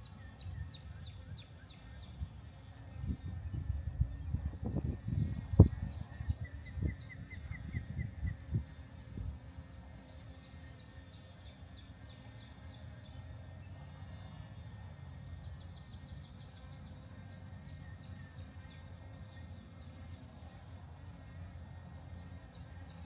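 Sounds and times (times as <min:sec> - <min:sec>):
low wind rumble: 0:02.0 - 0:09.5.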